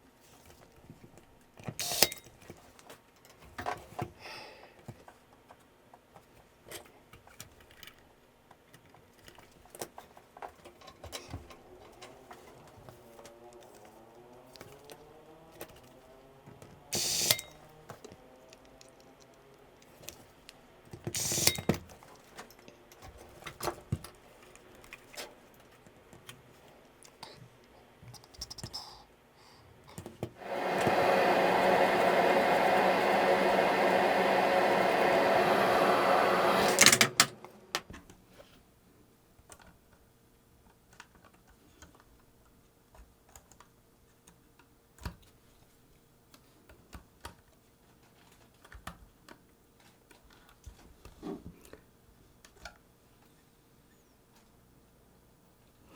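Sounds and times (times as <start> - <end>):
loud whirring hiss: 1.8 - 2.1, 17.0 - 17.5, 30.4 - 37.8.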